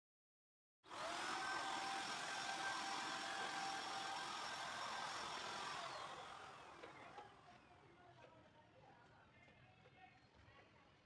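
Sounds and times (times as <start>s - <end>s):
small motor whining: 0.9s - 7.3s.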